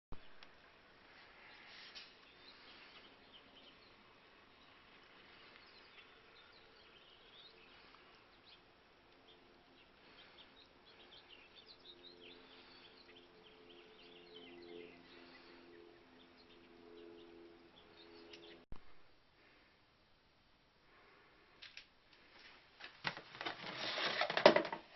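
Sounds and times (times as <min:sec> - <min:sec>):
birds chirping: 0:00.1 - 0:18.7
low steady hum: 0:00.1 - 0:22.8.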